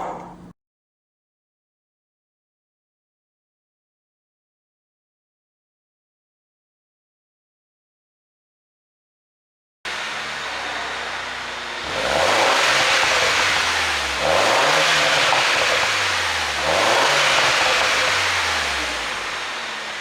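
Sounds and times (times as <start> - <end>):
car engine idling and revving: 9.9 - 20.0.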